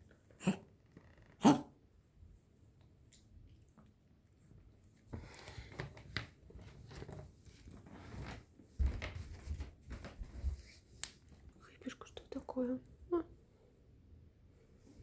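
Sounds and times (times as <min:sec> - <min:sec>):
puppy coughing: 0:00.4 - 0:00.6, 0:01.4 - 0:01.7.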